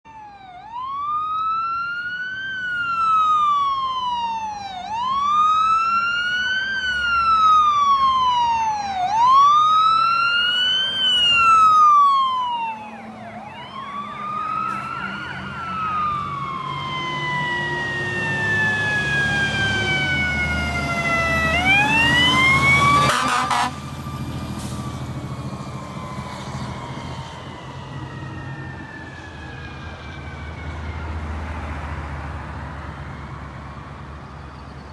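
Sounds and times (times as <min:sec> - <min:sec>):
fire truck sirens wailing: 0:00.0 - 0:34.9
diesel engines running: 0:04.8 - 0:34.9
air horn blasts: 0:22.9 - 0:23.8.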